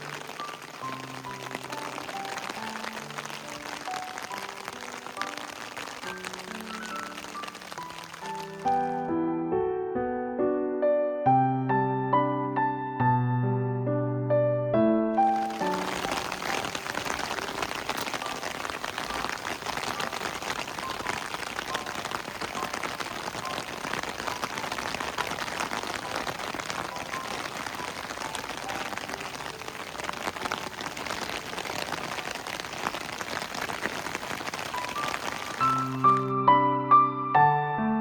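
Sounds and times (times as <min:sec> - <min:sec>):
heavy rain falling: 0:00.0 - 0:09.1, 0:15.2 - 0:36.3.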